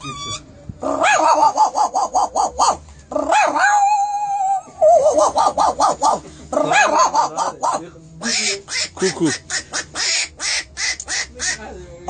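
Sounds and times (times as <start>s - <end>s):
dog yipping and whining: 1.0s - 6.0s.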